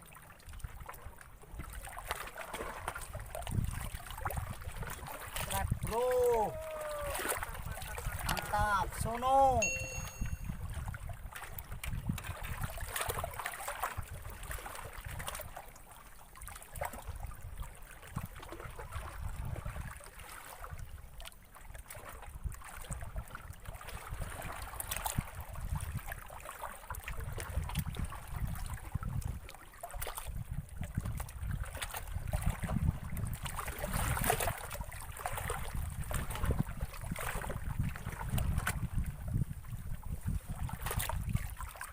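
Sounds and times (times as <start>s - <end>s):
water lapping and splashing: 0.0s - 41.9s.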